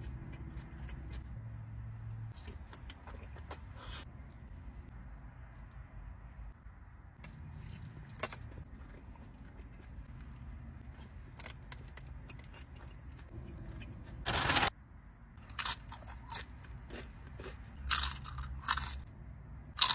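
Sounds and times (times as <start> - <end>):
low steady hum: 0.0 - 19.9
taco crunching while chewed: 2.3 - 5.8, 7.1 - 13.3, 15.4 - 19.1.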